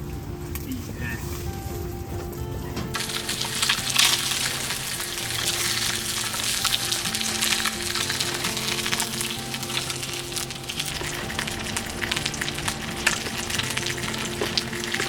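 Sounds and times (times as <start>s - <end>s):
soft background music: 0.0s - 15.0s
food sizzling in a pan: 3.0s - 15.0s
stirring in a pan: 3.0s - 15.0s.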